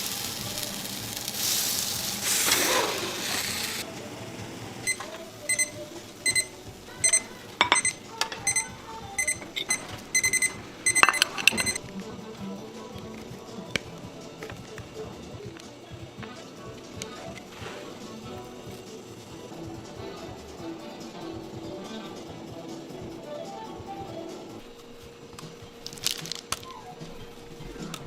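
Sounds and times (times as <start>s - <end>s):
loud hissing noise: 0.0s - 7.6s
high electronic beeps: 4.8s - 11.8s.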